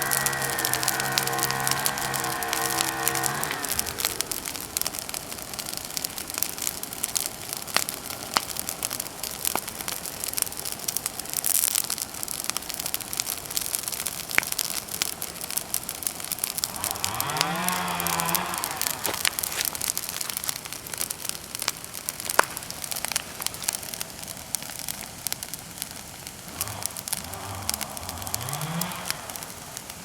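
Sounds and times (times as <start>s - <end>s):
bonfire crackling and popping: 0.0s - 30.0s
steady hiss: 0.0s - 30.0s.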